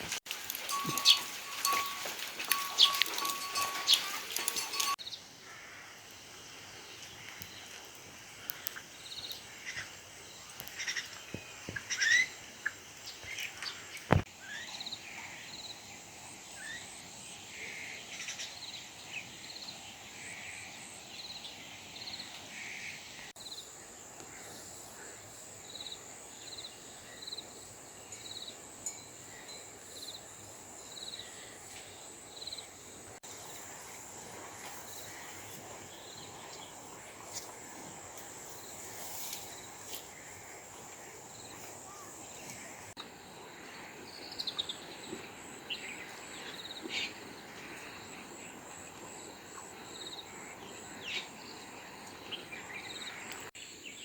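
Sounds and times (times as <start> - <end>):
birds chirping: 0.0 - 5.2.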